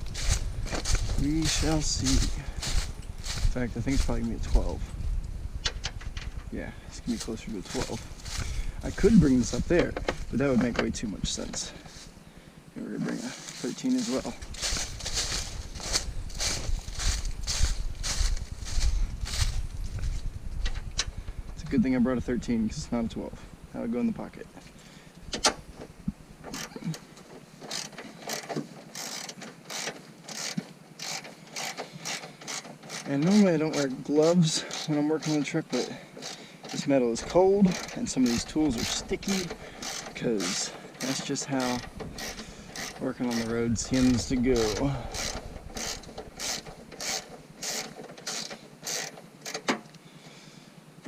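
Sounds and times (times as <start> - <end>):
ratchet wrench clicking: 27.7 - 35.5, 37.7 - 49.6.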